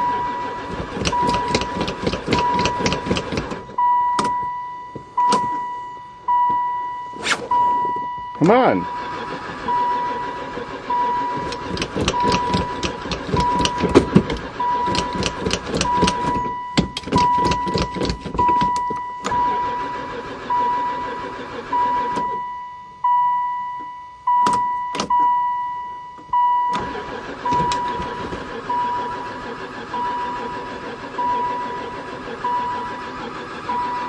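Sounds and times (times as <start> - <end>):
starter cranking engine: 0.0 - 4.4, 8.4 - 22.4, 26.4 - 34.0
electronic warning chime: 3.7 - 9.0
sharp clicks: 11.4 - 19.4.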